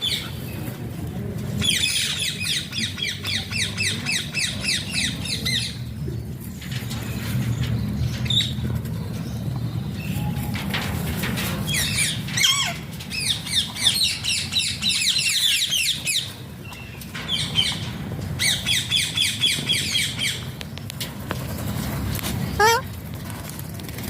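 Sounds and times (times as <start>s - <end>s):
parakeet squawking: 22.6s - 22.9s.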